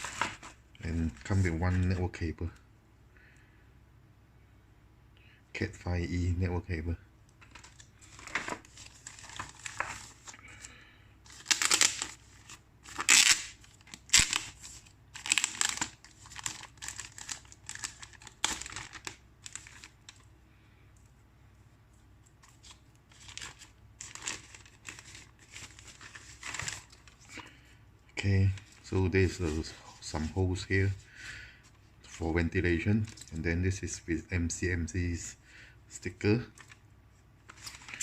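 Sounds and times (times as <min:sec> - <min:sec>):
plastic packaging crinkling and tearing: 0:07.4 - 0:10.4, 0:11.3 - 0:20.3, 0:22.4 - 0:27.5, 0:37.5 - 0:38.0.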